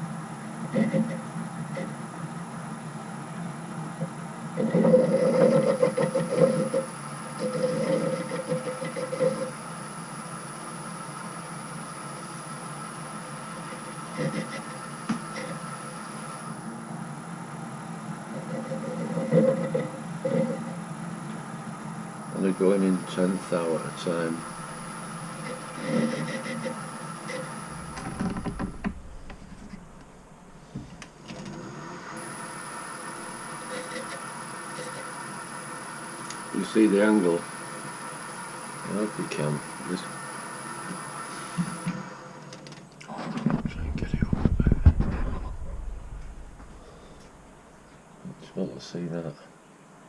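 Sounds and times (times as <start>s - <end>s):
metal lathe running: 4.5s - 42.6s
knocks: 27.8s - 31.1s.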